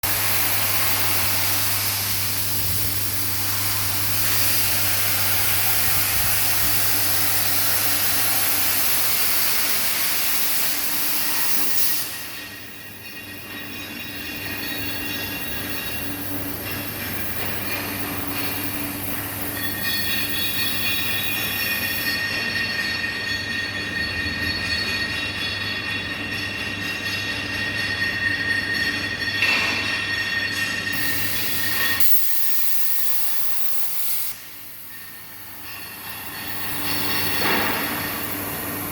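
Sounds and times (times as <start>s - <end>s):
plasma torch hissing: 0.0s - 12.4s, 31.0s - 34.9s
high-pitched whine: 0.0s - 25.6s, 27.8s - 38.9s.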